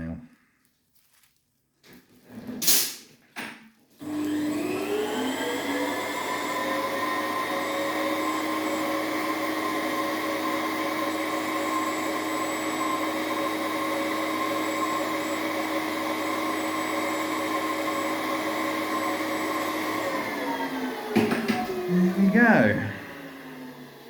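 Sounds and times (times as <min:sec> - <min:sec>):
electric nail drill whine: 0:04.0 - 0:22.1.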